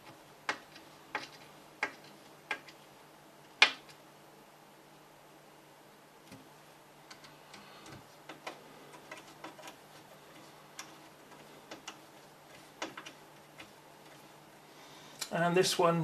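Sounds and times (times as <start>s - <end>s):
screws clicking and tapping: 0.0s - 2.8s, 7.1s - 13.7s.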